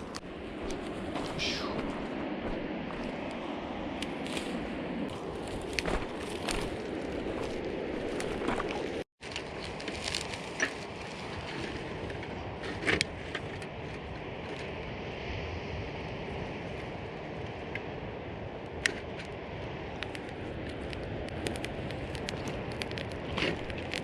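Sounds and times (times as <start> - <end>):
steady rushing noise: 0.0 - 9.1
campfire crackling and popping: 2.4 - 11.1, 19.8 - 24.0.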